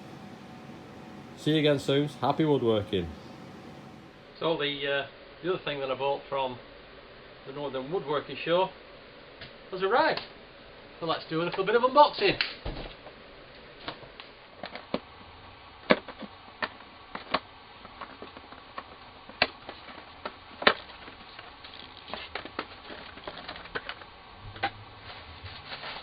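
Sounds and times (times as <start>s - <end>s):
packaging rustling and scraping: 17.1s - 26.0s.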